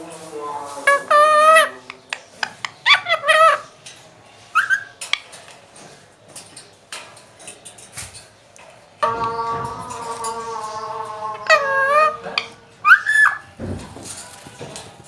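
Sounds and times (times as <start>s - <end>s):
steady held tone: 9.0s - 13.1s
parakeet warbling calls: 9.0s - 13.5s.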